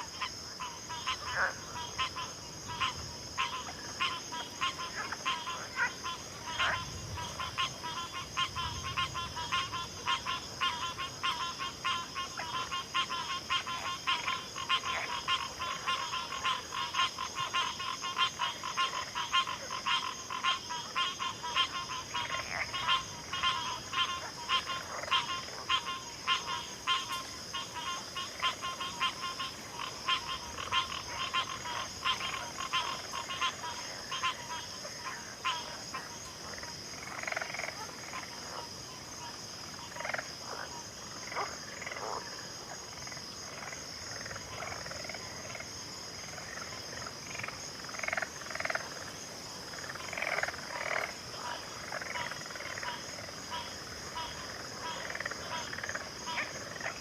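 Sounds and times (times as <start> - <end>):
frog chorus: 0.0 - 57.0.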